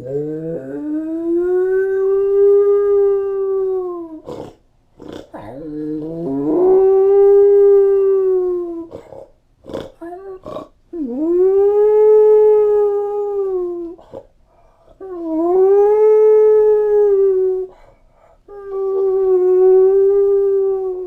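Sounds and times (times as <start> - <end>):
dog howling: 0.0 - 4.2, 5.4 - 9.0, 11.0 - 14.0, 18.5 - 21.0.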